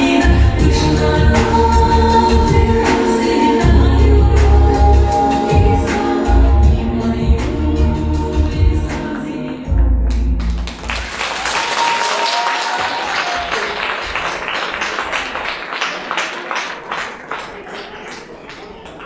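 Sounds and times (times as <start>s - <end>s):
audience applauding: 10.1s - 19.0s.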